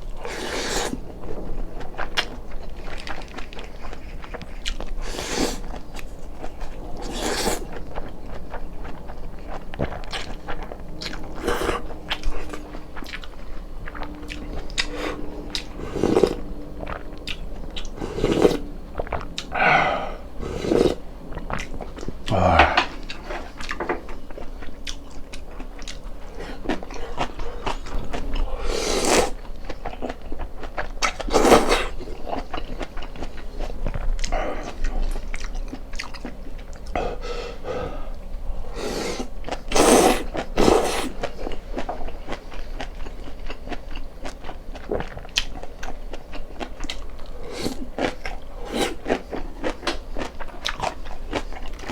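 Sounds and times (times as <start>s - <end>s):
person chewing and biting food: 2.0s - 23.8s, 38.8s - 51.9s.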